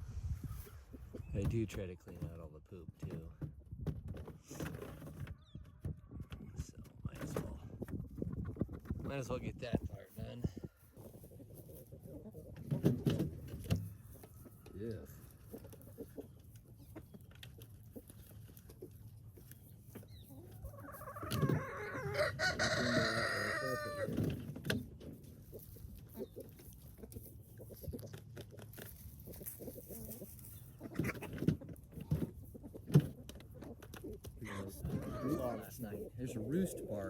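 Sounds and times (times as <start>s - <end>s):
chickens clucking: 0.0s - 37.0s
rooster crowing: 21.3s - 24.1s.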